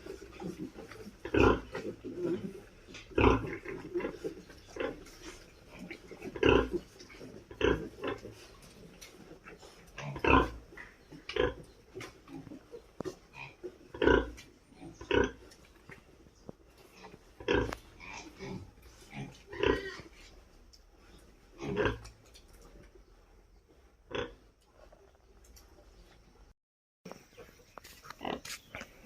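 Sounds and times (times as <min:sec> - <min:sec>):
pigs grunting: 0:00.0 - 0:16.1, 0:16.8 - 0:20.4, 0:21.5 - 0:22.2.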